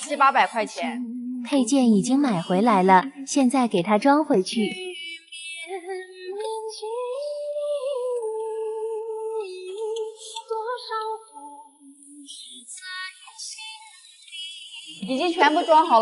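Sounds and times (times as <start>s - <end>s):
woman singing slow melody: 0.0s - 3.5s, 4.2s - 12.6s.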